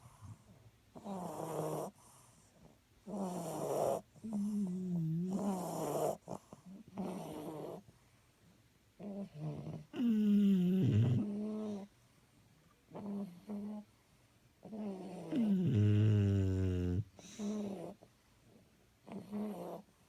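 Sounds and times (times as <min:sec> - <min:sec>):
dog snoring: 0:00.0 - 0:07.8, 0:09.0 - 0:11.9, 0:12.9 - 0:13.9, 0:14.6 - 0:18.1, 0:19.0 - 0:19.9.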